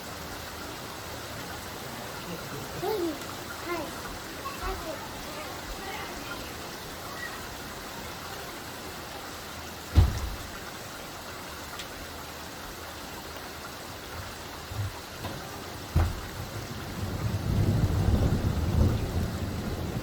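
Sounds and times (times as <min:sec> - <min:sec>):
steady rain falling: 0:00.0 - 0:20.0
low thumps: 0:15.9 - 0:16.6.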